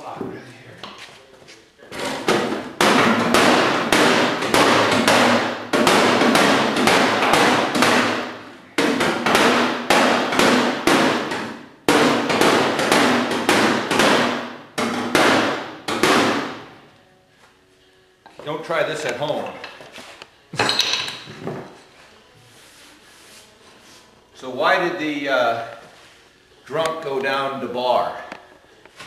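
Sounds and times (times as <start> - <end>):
hammer striking sheet metal: 2.2 - 16.8.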